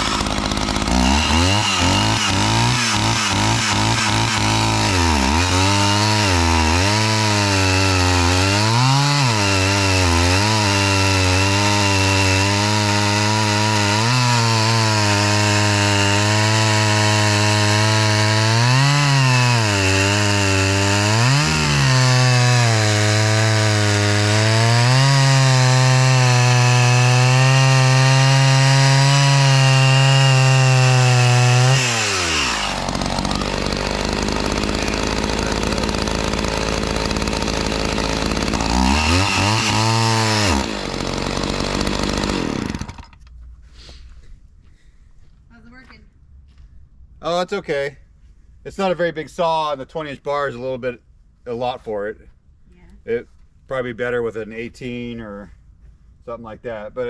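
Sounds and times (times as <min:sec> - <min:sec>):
chainsaw cutting wood: 0:00.0 - 0:43.3.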